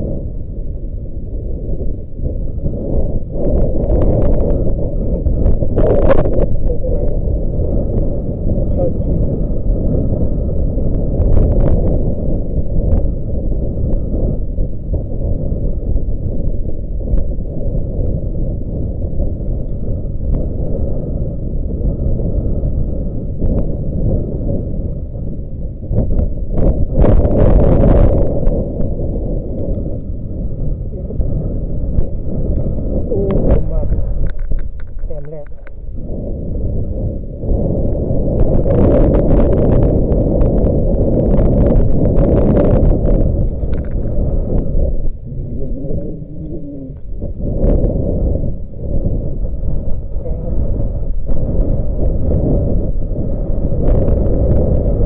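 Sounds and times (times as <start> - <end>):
wind buffeting microphone: 0.0 - 55.0
crackling and rustling clicks: 29.4 - 30.1, 32.0 - 35.8, 38.4 - 47.1.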